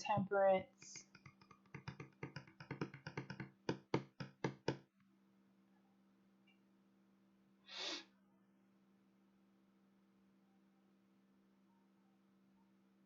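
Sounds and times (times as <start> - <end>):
sharp knocks on table: 1.1 - 4.8.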